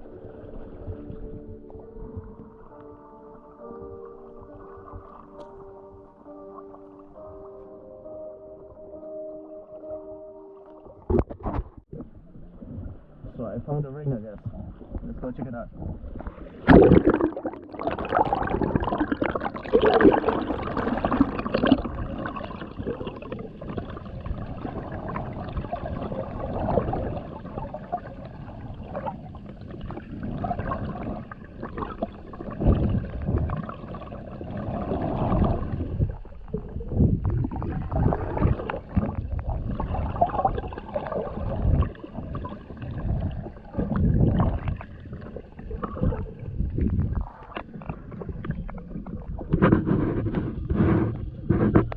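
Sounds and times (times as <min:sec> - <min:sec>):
underwater river water rushing: 0:00.0 - 0:07.4, 0:10.7 - 0:51.9
low underwater thumps: 0:11.0 - 0:19.4.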